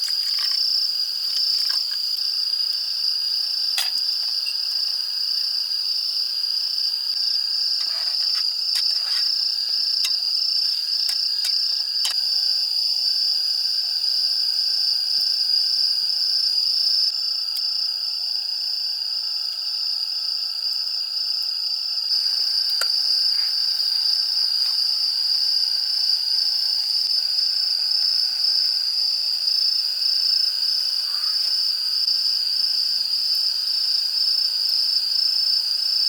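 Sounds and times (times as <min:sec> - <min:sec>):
crickets chirping: 0:00.0 - 0:36.0.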